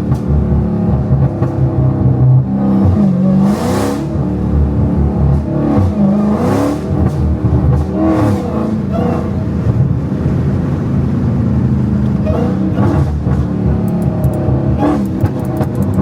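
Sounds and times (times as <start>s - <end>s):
car engine accelerating hard: 0.0s - 16.0s.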